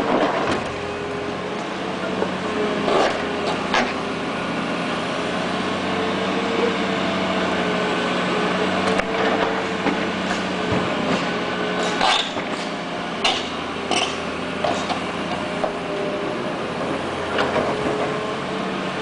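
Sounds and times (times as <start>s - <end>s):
excavator engine running: 0.0s - 19.0s.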